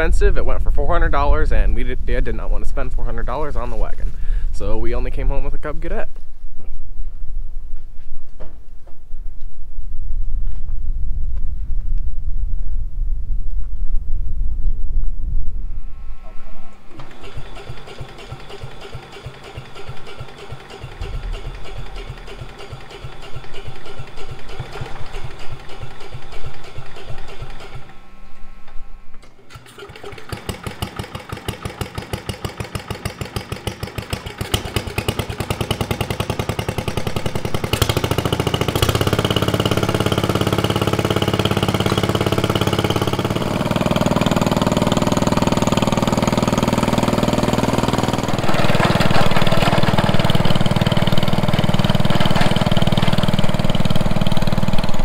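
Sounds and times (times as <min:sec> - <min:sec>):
single-cylinder engine starting and running: 0:16.8 - 0:55.0.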